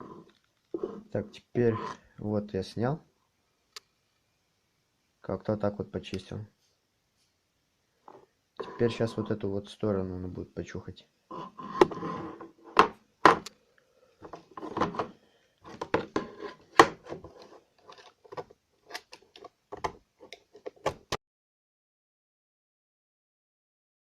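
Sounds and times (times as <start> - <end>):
hand scraping plastic cover: 0.0 - 2.0, 8.1 - 9.2, 11.3 - 13.5, 14.2 - 21.2.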